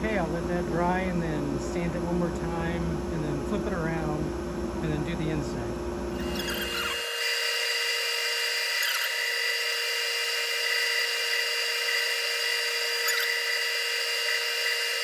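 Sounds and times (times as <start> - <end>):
wood lathe whining: 6.1 - 15.0.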